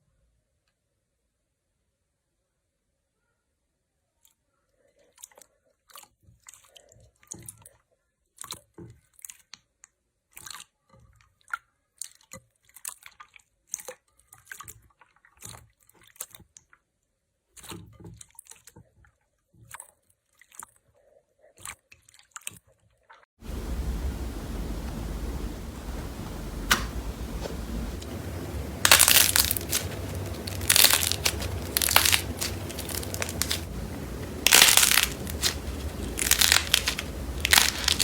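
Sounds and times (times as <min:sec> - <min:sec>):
loud steady hiss: 0:23.4 - 0:38.0
slime crackling and popping: 0:23.7 - 0:38.0.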